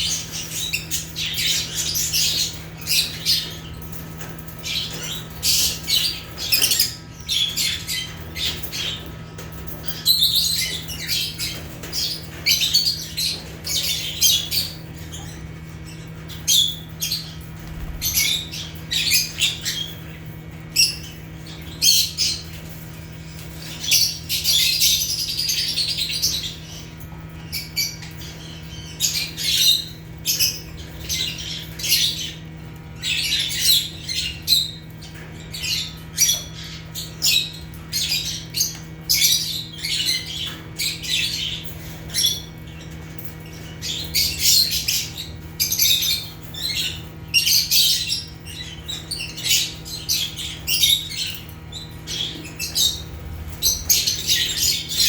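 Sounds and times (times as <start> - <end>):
lovebirds chirping and squawking: 0.0 - 55.0
steady low hum: 13.0 - 55.0.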